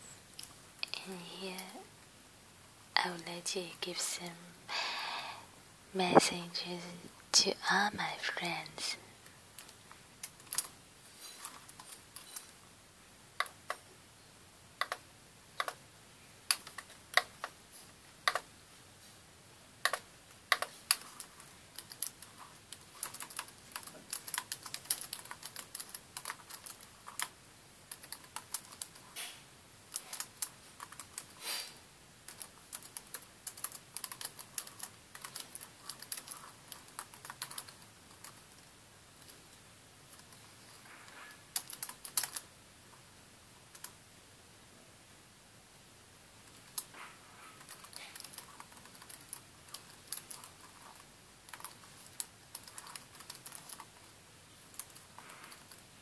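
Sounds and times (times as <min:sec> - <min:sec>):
typing on computer keyboard: 0:09.6 - 0:10.7, 0:14.8 - 0:15.8, 0:16.5 - 0:17.6, 0:18.2 - 0:18.5, 0:19.8 - 0:29.2, 0:29.9 - 0:31.4, 0:32.2 - 0:38.6, 0:41.5 - 0:42.5, 0:43.7 - 0:44.0, 0:47.6 - 0:54.1, 0:54.7 - 0:55.9.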